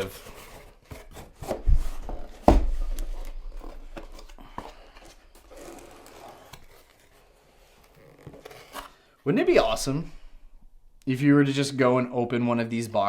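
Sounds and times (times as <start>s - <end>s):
cardboard rubbing and scraping: 0.0s - 9.0s
knocks on cardboard box: 2.3s - 4.3s.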